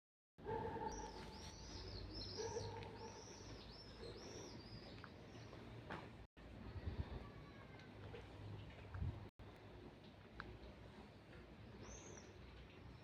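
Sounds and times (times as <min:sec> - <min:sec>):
small birds chirping: 0:00.5 - 0:05.9, 0:10.6 - 0:13.0.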